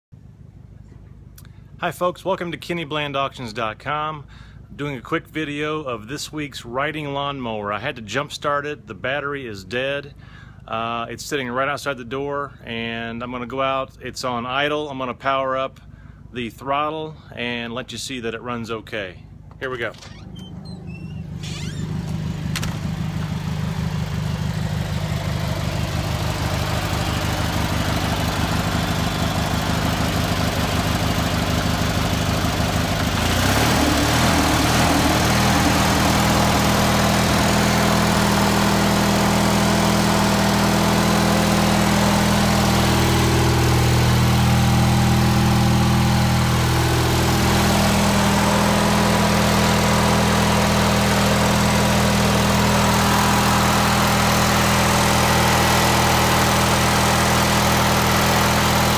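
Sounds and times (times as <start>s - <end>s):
riding lawn mower engine: 19.5s - 58.9s.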